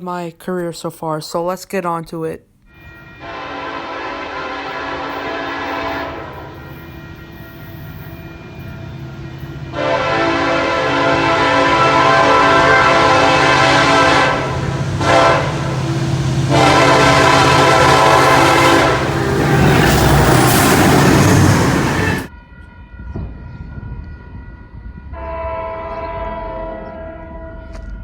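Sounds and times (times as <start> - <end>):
locomotive air horn blasts: 2.7 - 22.3, 25.1 - 27.8
faint train horn: 2.7 - 28.0
rush of passing train: 2.8 - 28.0.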